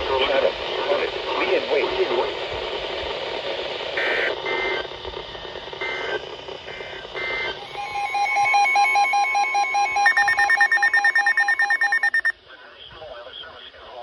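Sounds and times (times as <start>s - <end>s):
digital data tone bursts: 7.6s - 12.3s
rapid pulsing electronic beep: 7.6s - 12.3s.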